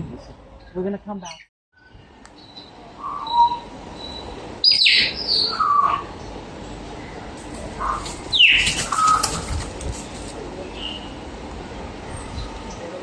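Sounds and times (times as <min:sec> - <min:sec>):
bird chirps: 0:00.6 - 0:06.3
harsh bird calls: 0:02.4 - 0:09.7.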